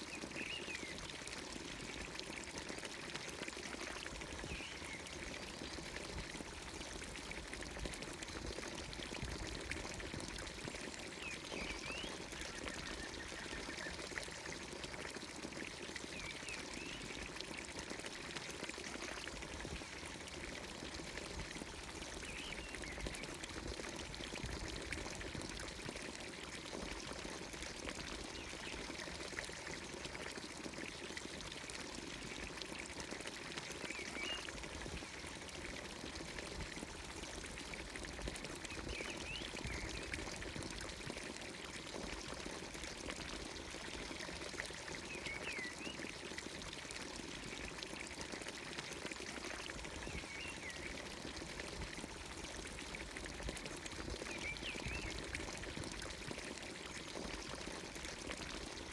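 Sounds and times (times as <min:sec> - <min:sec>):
fountain water splashing: 0:00.0 - 0:58.9.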